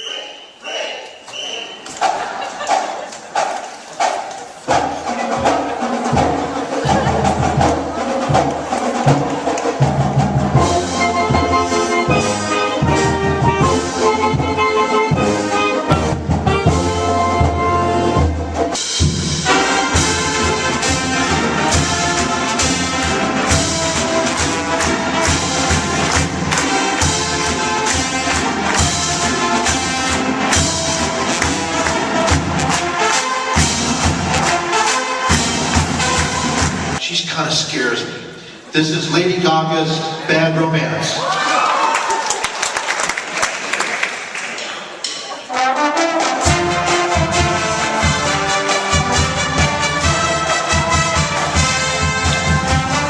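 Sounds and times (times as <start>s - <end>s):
marching drums and percussion: 1.1s - 37.0s, 45.0s - 53.0s
brass playing: 10.0s - 37.0s, 45.5s - 53.0s.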